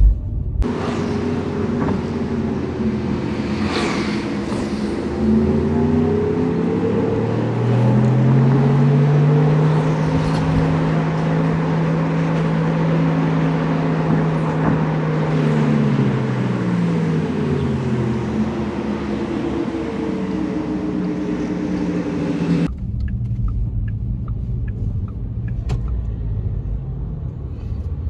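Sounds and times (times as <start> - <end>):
synthetic low engine rumble: 0.0 - 1.6, 20.4 - 28.0.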